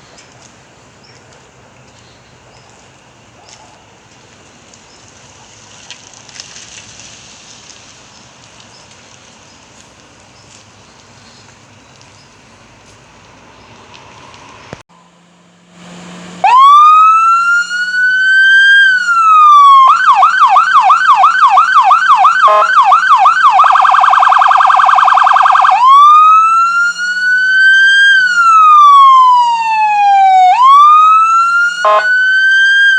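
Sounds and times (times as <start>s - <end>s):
police siren wailing and yelping: 16.4s - 32.9s
siren blip: 16.4s - 32.9s.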